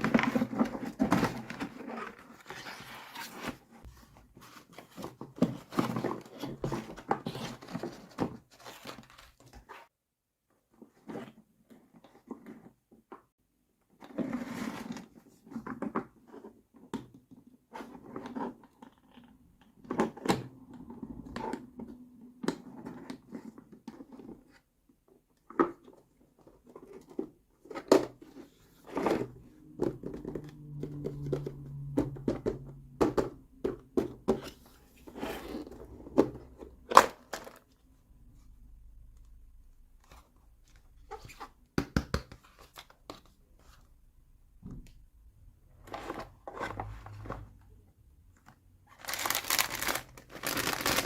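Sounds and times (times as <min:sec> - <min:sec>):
rustling: 0:48.9 - 0:51.0.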